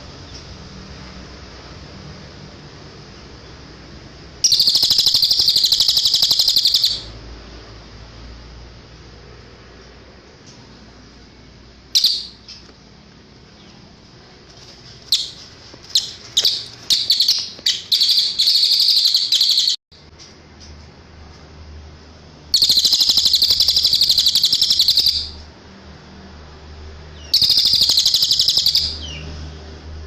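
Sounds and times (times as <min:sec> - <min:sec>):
bird chirping and trilling: 0:04.4 - 0:07.2, 0:11.9 - 0:12.7, 0:15.1 - 0:19.8, 0:22.5 - 0:25.4, 0:27.2 - 0:29.3.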